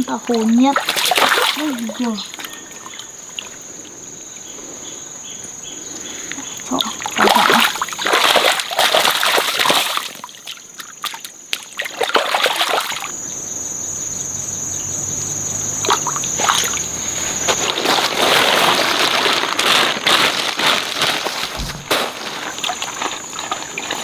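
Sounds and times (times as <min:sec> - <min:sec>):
running water: 0:00.0 - 0:03.6, 0:06.6 - 0:13.2, 0:21.6 - 0:24.0
water splashing and sloshing: 0:00.0 - 0:04.0, 0:06.5 - 0:13.2, 0:15.8 - 0:24.0
thin high steady tone: 0:12.9 - 0:18.4.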